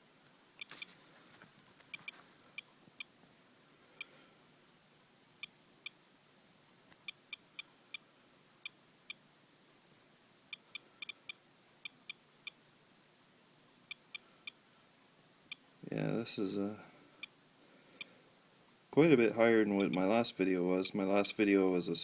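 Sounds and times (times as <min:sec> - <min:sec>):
radiation detector clicking: 0:19.8 - 0:20.2.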